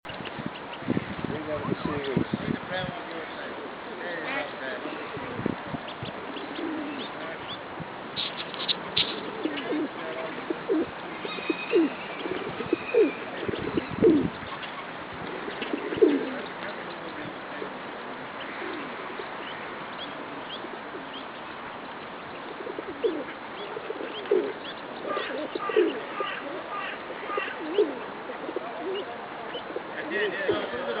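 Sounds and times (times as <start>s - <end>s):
ducklings peeping: 0.1s - 2.7s, 5.8s - 17.7s, 18.4s - 29.8s
duck calls: 25.1s - 27.8s.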